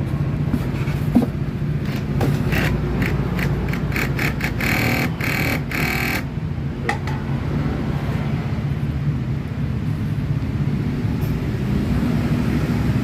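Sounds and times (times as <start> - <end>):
overlock machine stitching: 2.5 - 6.3.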